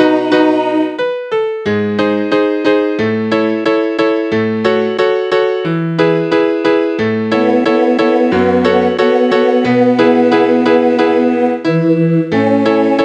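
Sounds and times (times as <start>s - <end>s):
electric piano chords: 0.0s - 13.0s
bass line: 7.0s - 13.0s.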